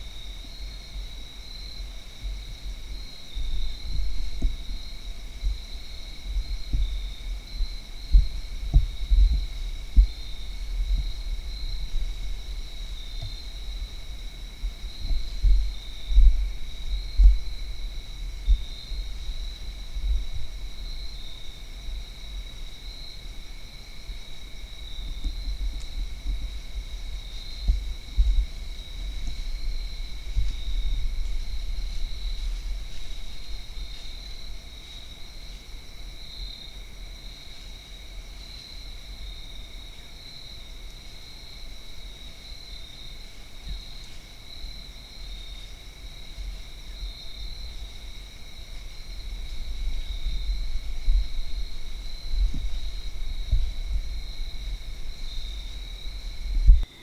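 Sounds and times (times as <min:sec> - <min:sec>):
crickets trilling: 0:00.0 - 0:57.0
low rumbles and thumps: 0:03.7 - 0:18.7, 0:49.8 - 0:55.2, 0:56.1 - 0:56.9.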